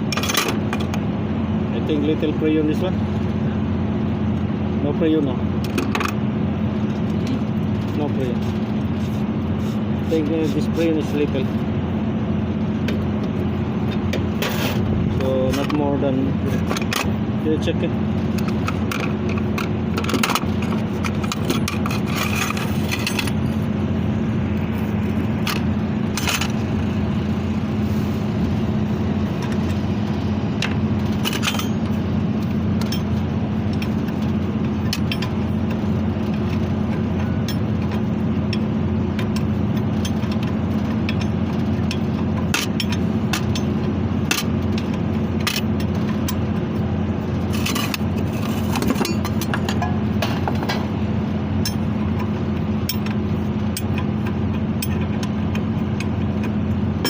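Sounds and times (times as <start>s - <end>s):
low machinery hum: 0.0s - 57.0s
hand tools clinking on metal: 31.2s - 32.0s, 47.5s - 50.8s, 51.6s - 51.9s.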